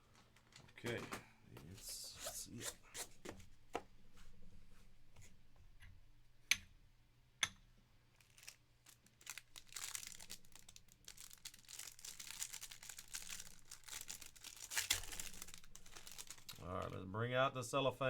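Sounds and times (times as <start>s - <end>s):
plastic wrapping tearing and crinkling: 8.2s - 17.0s.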